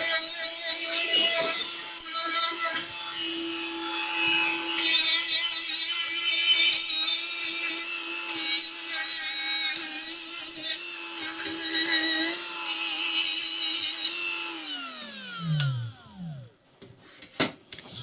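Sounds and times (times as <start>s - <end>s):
electric buffer whining: 0.0s - 5.8s, 13.9s - 16.6s.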